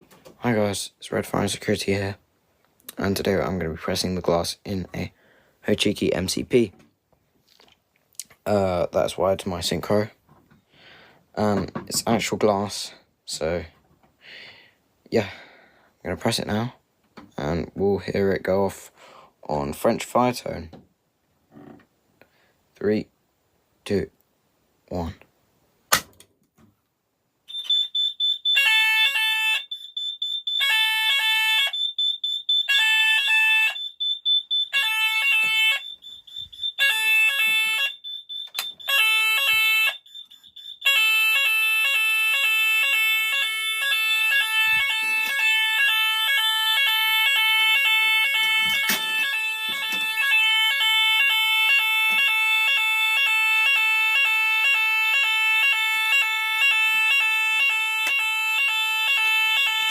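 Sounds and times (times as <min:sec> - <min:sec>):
steady high beep: 0:27.5 - 0:30.8, 0:31.6 - 0:41.0
fire alarm sounder: 0:27.5 - 0:59.9.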